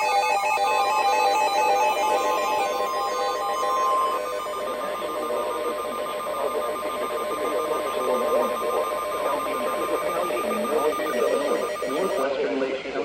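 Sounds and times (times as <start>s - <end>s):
pulsed alert beeps: 0.0s - 12.2s
steady high alert tone: 0.0s - 12.2s.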